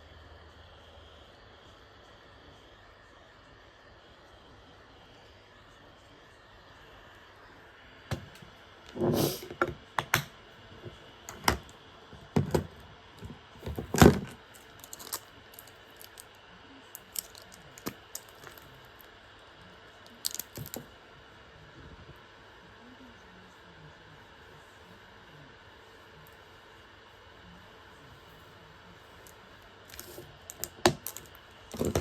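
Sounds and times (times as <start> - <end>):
small hard objects clicking: 14.6 - 16.3, 17.0 - 18.6, 20.1 - 20.8, 29.9 - 32.0.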